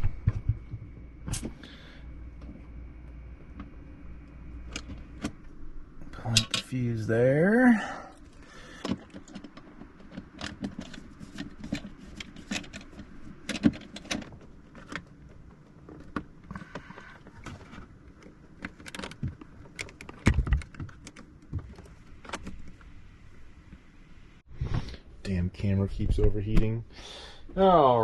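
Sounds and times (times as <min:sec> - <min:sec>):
small parts clicking and rattling: 0:08.2 - 0:15.1, 0:15.9 - 0:22.6.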